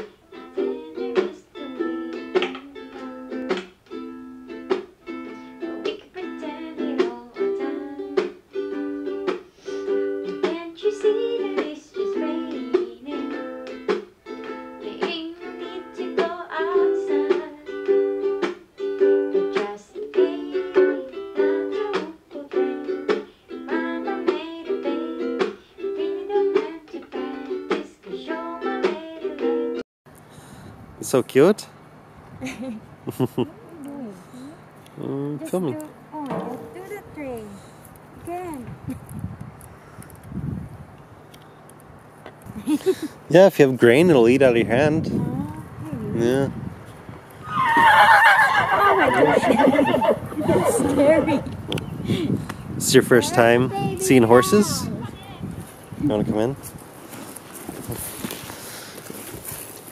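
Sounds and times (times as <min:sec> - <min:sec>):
plucked string instrument music: 0:00.0 - 0:21.9, 0:35.7 - 0:37.6.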